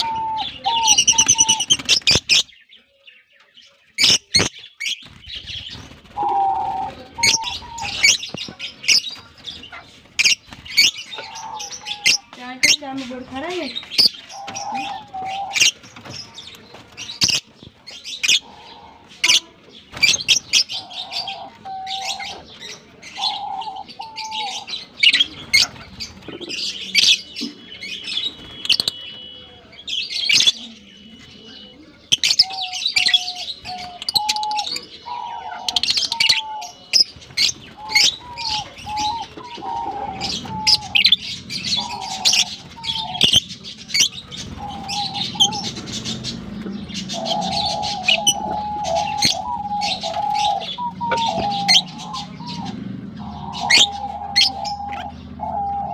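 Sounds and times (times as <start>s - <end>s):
lovebirds chirping: 0.0s - 55.9s.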